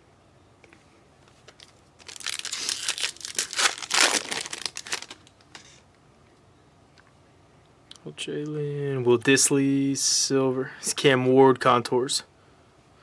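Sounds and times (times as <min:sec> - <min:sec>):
foil wrapper crinkling and tearing: 0:01.5 - 0:05.5.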